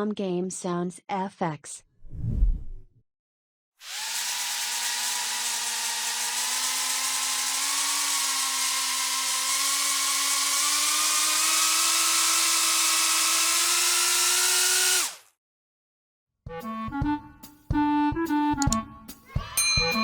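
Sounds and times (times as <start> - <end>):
music: 16.5 - 20.0.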